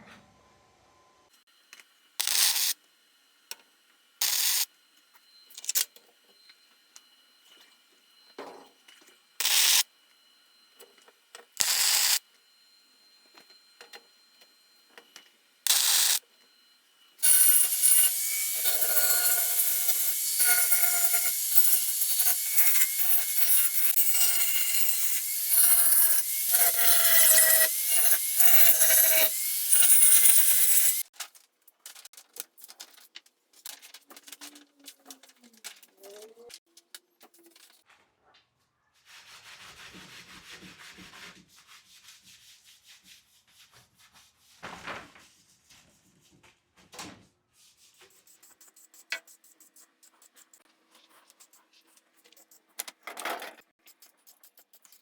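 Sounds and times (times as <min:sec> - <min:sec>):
power tool grinding: 0:17.2 - 0:31.1.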